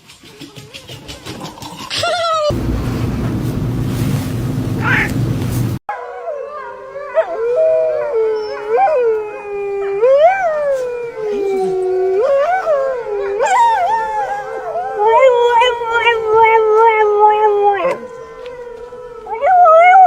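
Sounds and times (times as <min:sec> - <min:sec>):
dog howling: 0:04.8 - 0:05.2, 0:05.9 - 0:20.0.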